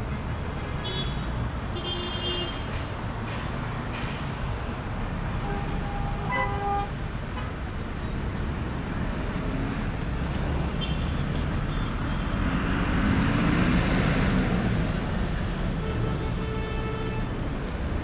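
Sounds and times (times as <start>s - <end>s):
city street traffic rumble: 0.0s - 18.0s
vehicle accelerating past: 12.3s - 15.0s.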